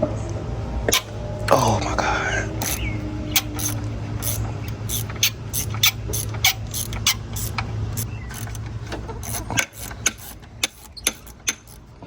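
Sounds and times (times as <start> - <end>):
steady low hum: 0.0 - 12.0
metallic hand tool clicks: 2.6 - 11.8.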